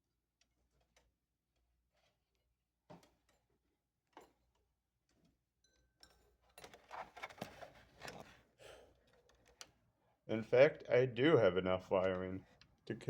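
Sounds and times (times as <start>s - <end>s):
rustling and scraping: 6.5s - 9.6s.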